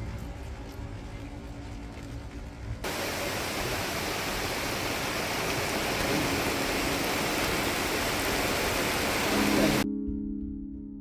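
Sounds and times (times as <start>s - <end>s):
heavy rain falling: 2.8s - 9.8s.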